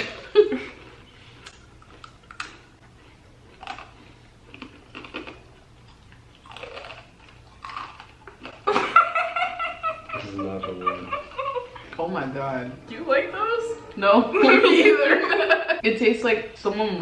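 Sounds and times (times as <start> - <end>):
chewing crunchy chips: 1.4 - 8.8.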